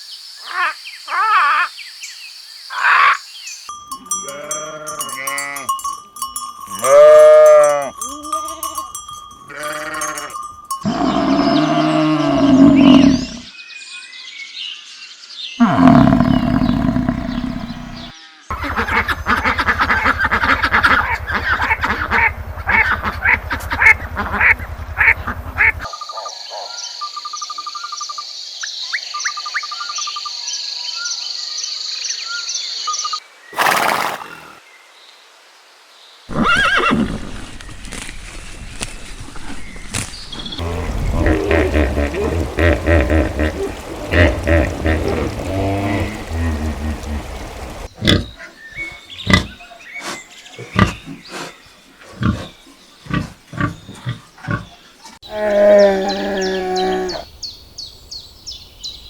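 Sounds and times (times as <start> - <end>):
animal bleating calls: 6.8 - 8.8, 9.5 - 13.5, 15.6 - 18.1, 40.6 - 47.9
low animal calls: 9.5 - 13.5, 15.6 - 18.1, 40.6 - 48.2
rapid pulsing animal noise: 15.6 - 18.1, 40.6 - 47.9.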